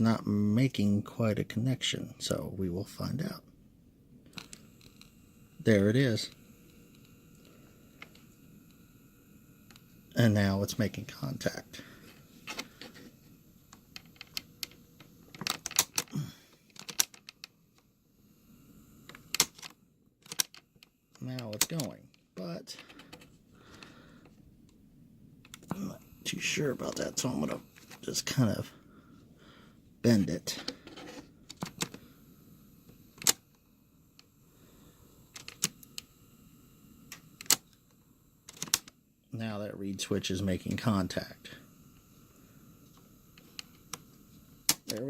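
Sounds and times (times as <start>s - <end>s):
tape mechanism clicks: 4.3s - 5.1s, 12.4s - 17.9s, 19.0s - 24.8s, 25.4s - 28.6s, 30.6s - 32.1s, 32.9s - 34.3s, 35.3s - 36.1s, 37.1s - 39.0s, 42.8s - 45.0s
cassette mechanism clicks and taps: 19.1s - 20.6s.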